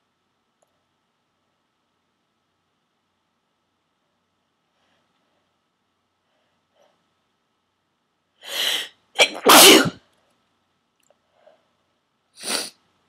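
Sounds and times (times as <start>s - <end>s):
person sneezing: 8.5s - 10.0s, 12.4s - 12.8s
breathy wind-up before sneeze: 12.4s - 12.8s.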